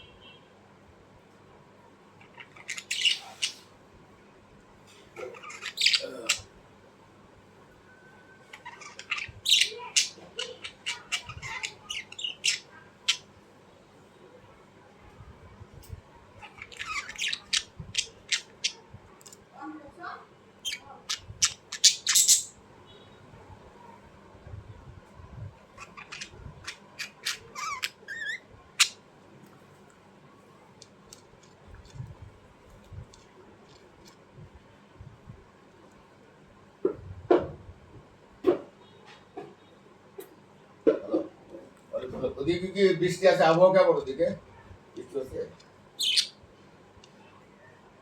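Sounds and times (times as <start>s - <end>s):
small birds chirping: 2.1s - 4.4s, 5.0s - 6.6s, 7.8s - 14.1s, 15.6s - 23.2s, 25.6s - 29.1s, 41.6s - 47.8s
bird squawking: 2.2s - 3.7s, 5.2s - 6.5s, 8.5s - 13.3s, 16.4s - 18.8s, 25.8s - 29.0s, 46.0s - 46.4s.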